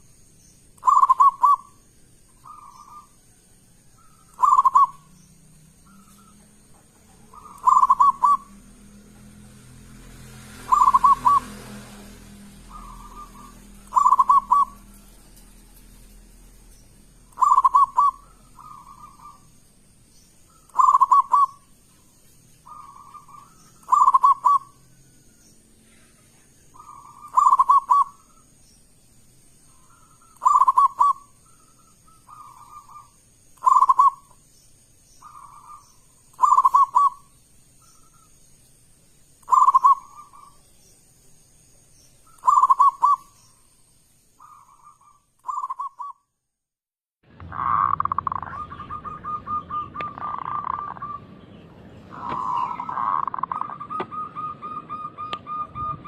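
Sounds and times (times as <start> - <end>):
dove cooing loudly: 0.8 - 1.8, 2.4 - 3.1, 4.0 - 5.1, 7.1 - 8.6, 10.6 - 11.8, 12.6 - 14.9, 17.2 - 19.5, 20.5 - 21.6, 22.6 - 24.8, 26.8 - 28.4, 30.0 - 31.3, 32.1 - 34.3, 36.4 - 37.3, 39.5 - 40.5, 42.4 - 43.3, 47.4 - 51.3, 52.0 - 56.0.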